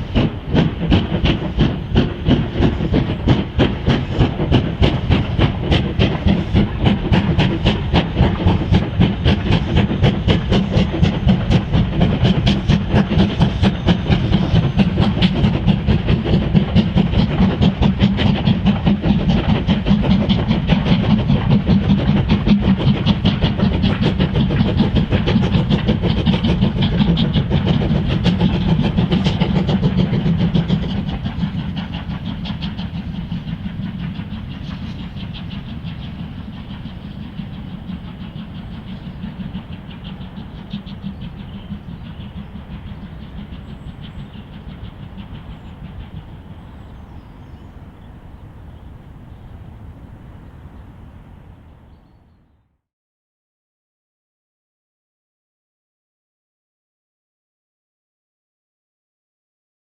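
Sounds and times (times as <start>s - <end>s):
steam train exhaust beating: 0.0s - 52.4s.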